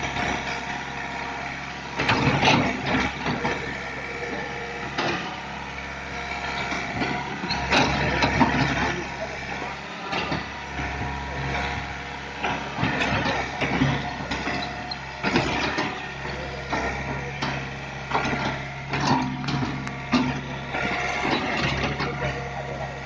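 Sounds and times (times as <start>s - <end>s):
excavator engine running: 0.0s - 23.0s
metallic clanks and knocks: 2.0s - 3.7s, 6.5s - 9.0s, 10.0s - 22.4s.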